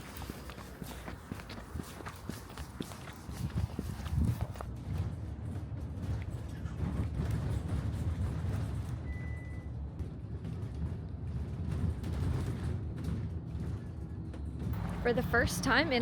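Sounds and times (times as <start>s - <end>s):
bus engine rumbling: 14.8s - 16.0s.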